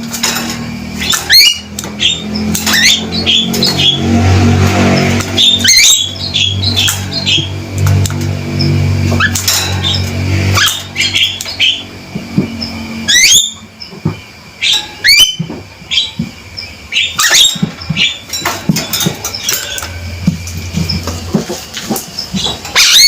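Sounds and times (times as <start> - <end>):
myna rising whistles: 13.0 - 13.6.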